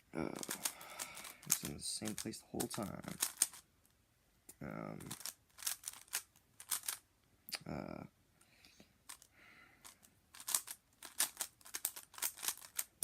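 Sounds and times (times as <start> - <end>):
speedcube clicking turns: 0.4 - 3.6, 5.0 - 7.0, 9.0 - 13.0.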